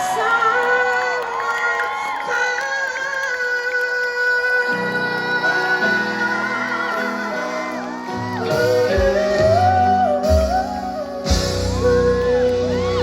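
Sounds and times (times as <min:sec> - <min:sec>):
live pop band music: 0:00.0 - 0:13.0
bass: 0:08.1 - 0:13.0.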